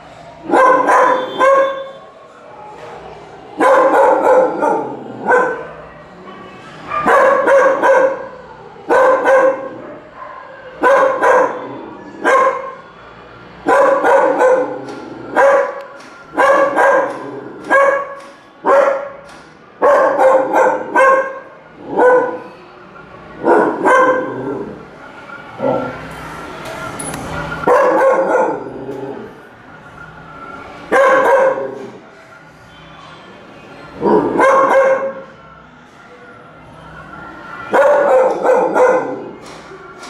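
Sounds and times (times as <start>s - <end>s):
dog barking: 0.5s - 2.0s, 3.6s - 5.9s, 6.8s - 12.8s, 13.6s - 22.5s, 23.4s - 24.8s, 27.7s - 29.0s, 30.9s - 32.0s, 34.0s - 35.3s, 37.7s - 39.4s.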